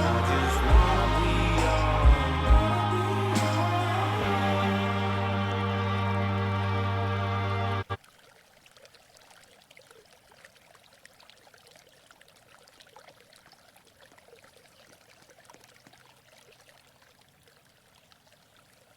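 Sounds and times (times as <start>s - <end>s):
stream water trickling: 7.9s - 18.9s.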